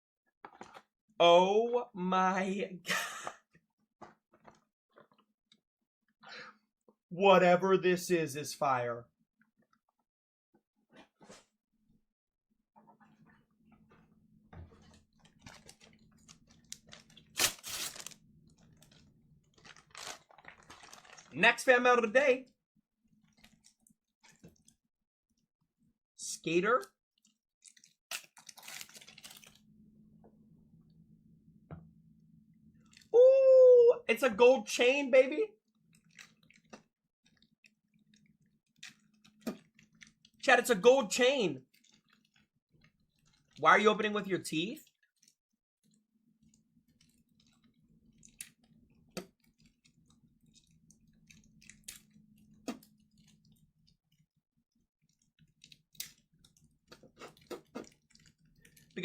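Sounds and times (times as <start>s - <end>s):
package rustling and tearing: 15.3s - 21.4s, 28.1s - 29.6s.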